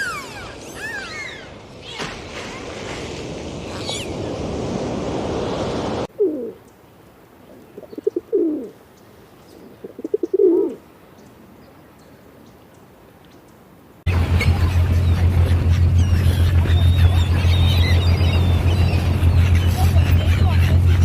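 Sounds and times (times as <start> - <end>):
pigeon cooing: 6.1 - 6.6, 7.8 - 8.8, 9.5 - 10.8.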